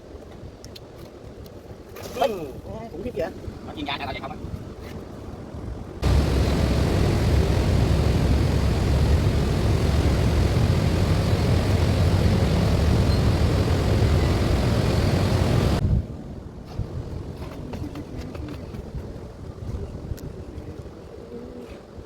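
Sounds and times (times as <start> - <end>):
loud mechanical roar: 6.0 - 15.8.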